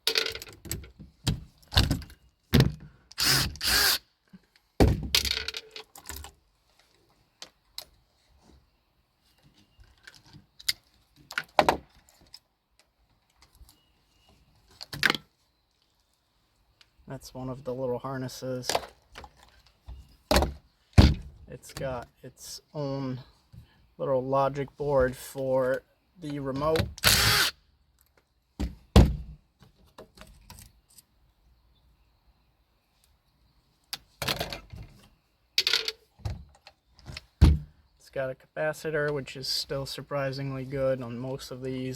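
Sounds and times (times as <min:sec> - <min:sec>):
rattling clatter of parts: 0:00.0 - 0:02.8, 0:04.8 - 0:06.4.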